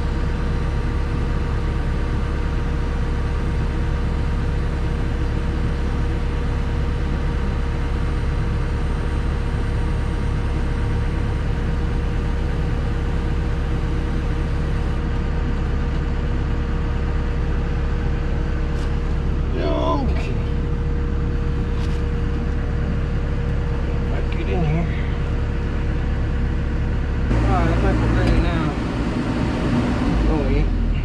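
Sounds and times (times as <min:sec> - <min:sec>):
excavator diesel engine running: 0:00.0 - 0:31.0.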